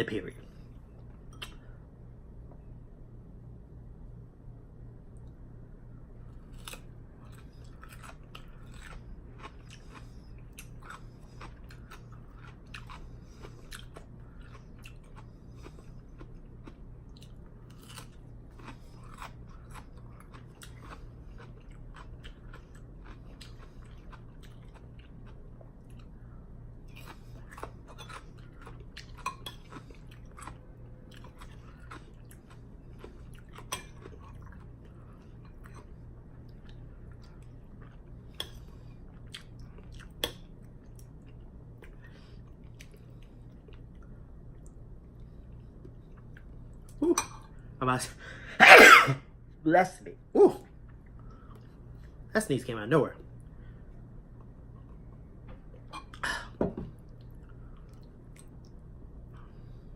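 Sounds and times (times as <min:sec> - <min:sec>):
close chewing and biting: 0:06.5 - 0:26.1, 0:26.8 - 0:38.3.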